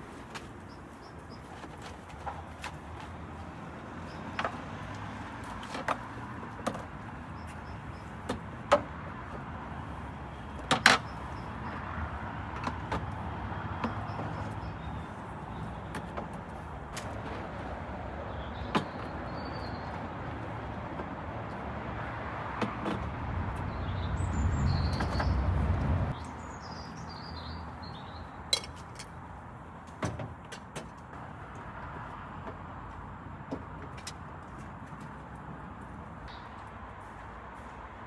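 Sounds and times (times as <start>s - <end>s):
traffic rumble: 0.0s - 38.0s
vehicle passing: 20.0s - 26.2s
small birds chirping: 23.6s - 25.5s, 26.1s - 28.5s.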